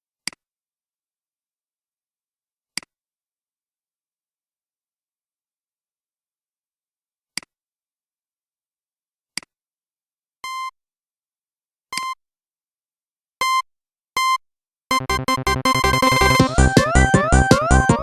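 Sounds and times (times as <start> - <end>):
phone key beeps: 10.4 - 10.8, 12.0 - 12.2.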